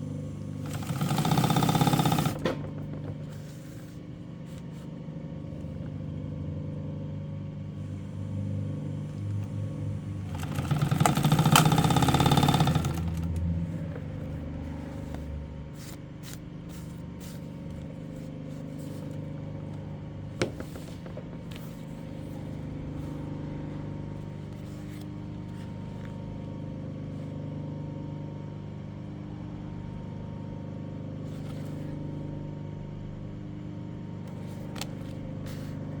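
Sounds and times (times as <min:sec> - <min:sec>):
sewing machine motor humming: 0:00.1 - 0:03.6, 0:07.8 - 0:23.4.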